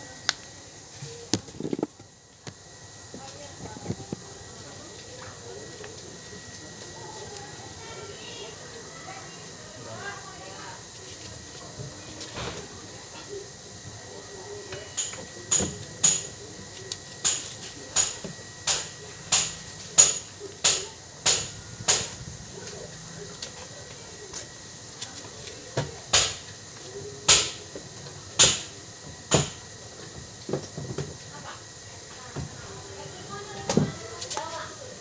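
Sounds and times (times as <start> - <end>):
hammer blows on metal: 17.2 - 22.2.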